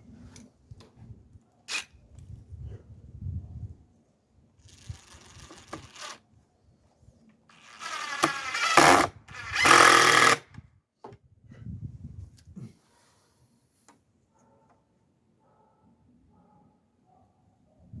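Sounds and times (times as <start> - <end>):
power drill running: 7.5 - 10.4.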